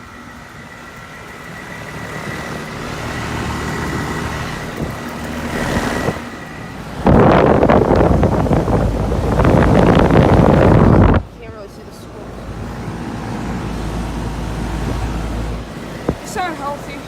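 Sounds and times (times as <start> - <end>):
air conditioner compressor hum: 0.0 - 17.0
wind buffeting microphone: 4.2 - 17.0.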